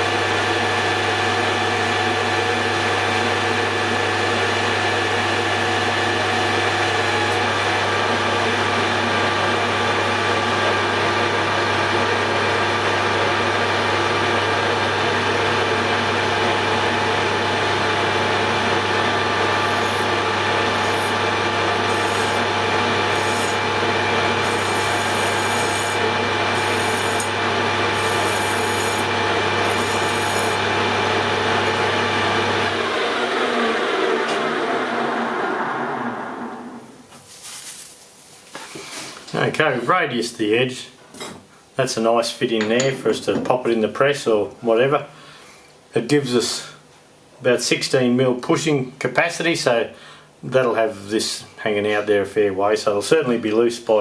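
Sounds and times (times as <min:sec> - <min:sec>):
metal lathe motor hum: 0:00.0 - 0:36.9.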